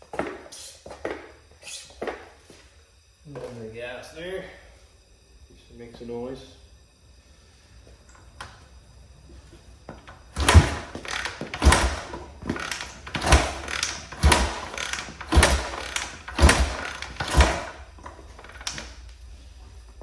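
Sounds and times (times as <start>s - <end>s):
motorcycle being kick-started: 9.9s - 19.2s.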